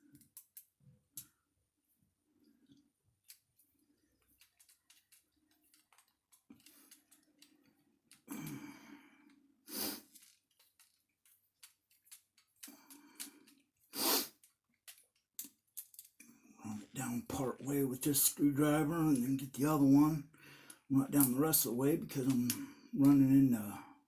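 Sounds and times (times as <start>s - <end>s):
clicks of small plastic parts: 0.1s - 1.3s, 4.2s - 8.6s, 10.0s - 13.8s, 14.4s - 16.3s.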